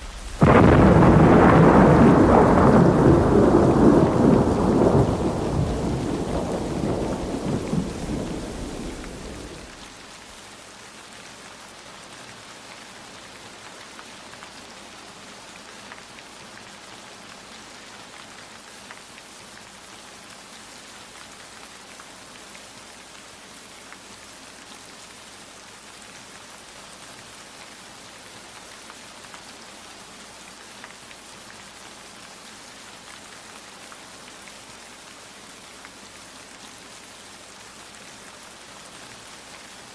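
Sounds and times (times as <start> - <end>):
raindrops ticking: 0.0 - 9.9
thunder rumble: 0.0 - 9.9
steady rain falling: 0.0 - 39.9.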